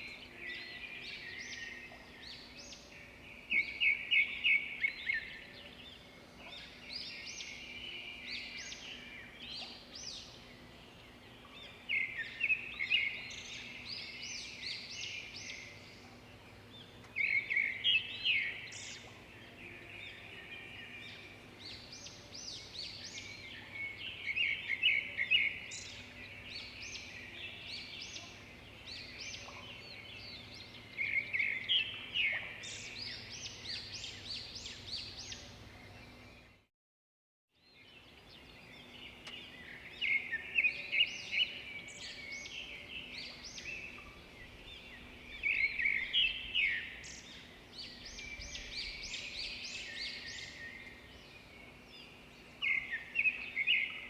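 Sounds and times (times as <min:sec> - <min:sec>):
songbird chirps and trills: 0:00.0 - 0:36.7, 0:37.6 - 0:54.0.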